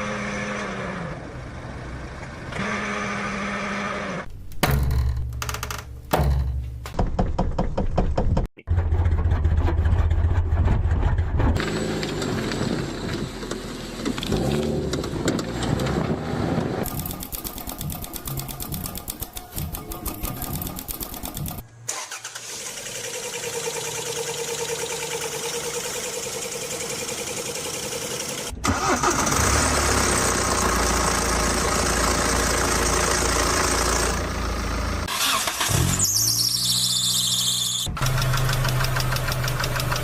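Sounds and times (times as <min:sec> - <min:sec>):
car engine cranking and starting: 0:08.7 - 0:36.3, 0:37.8 - 0:40.0
car engines running: 0:08.8 - 0:21.6, 0:23.4 - 0:35.1, 0:37.9 - 0:40.0
engine ticking or knocking: 0:16.9 - 0:21.6, 0:38.0 - 0:40.0.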